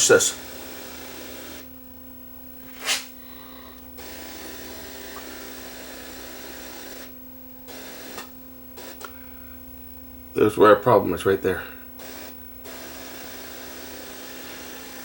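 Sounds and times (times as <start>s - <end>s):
static hiss: 0.0s - 1.7s, 3.9s - 9.2s, 12.0s - 15.0s
steady hum: 0.0s - 15.0s.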